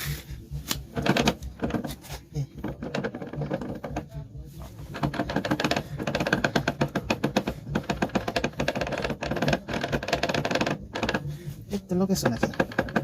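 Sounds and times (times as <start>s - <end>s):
engine ticking and clatter: 4.8s - 13.0s.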